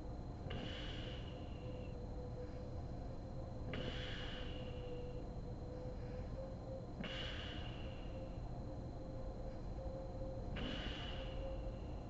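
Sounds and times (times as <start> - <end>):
woman breathing with whistling note: 0.5 - 2.8, 3.5 - 8.5, 9.4 - 12.0.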